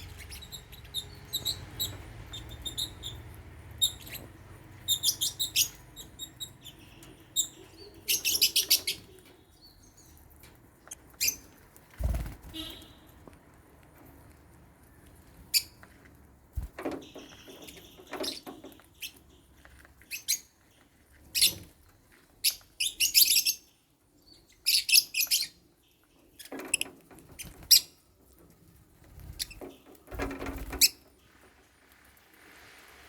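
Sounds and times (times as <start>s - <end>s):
lovebirds chirping: 0.0s - 13.3s, 16.6s - 28.1s
rustling and knocking: 29.4s - 31.0s.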